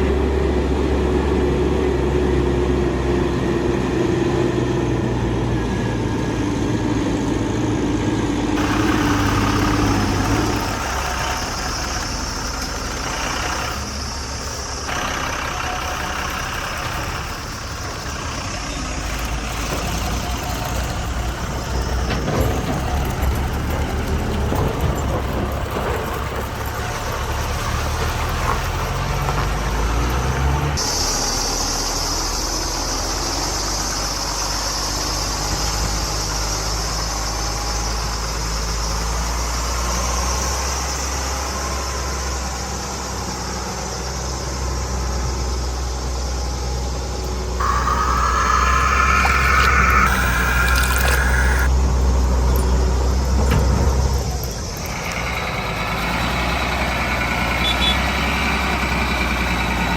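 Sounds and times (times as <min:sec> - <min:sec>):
truck engine idling: 0:08.6 - 0:30.2, 0:44.2 - 0:59.9.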